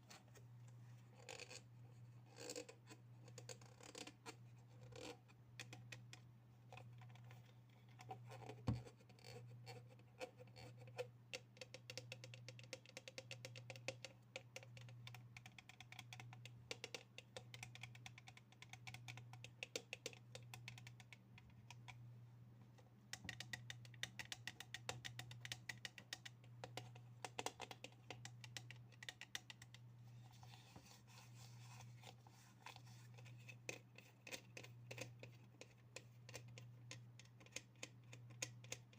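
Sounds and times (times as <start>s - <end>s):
fingers tapping on small objects: 11.4s - 21.9s, 23.1s - 29.9s.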